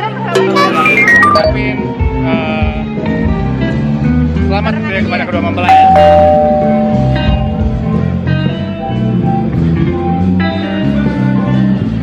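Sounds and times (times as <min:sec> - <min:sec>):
bass line: 0:05.7 - 0:08.9
plucked guitar notes: 0:05.7 - 0:08.9.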